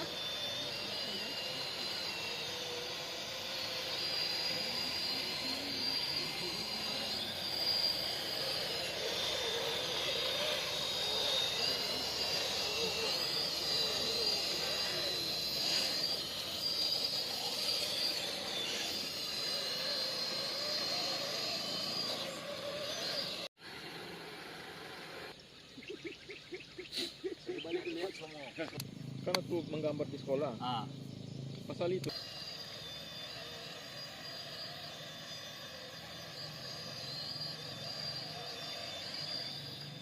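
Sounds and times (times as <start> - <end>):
electric motor and gearbox whining: 0.0 - 25.4, 28.1 - 40.0.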